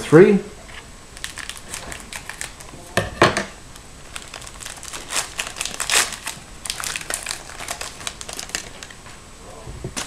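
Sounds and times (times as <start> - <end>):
wrapper crinkling: 1.1 - 3.0, 3.7 - 9.1.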